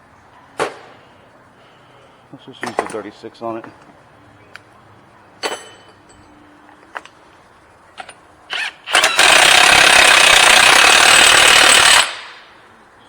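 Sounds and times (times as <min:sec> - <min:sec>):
impact wrench running: 0:08.5 - 0:12.4.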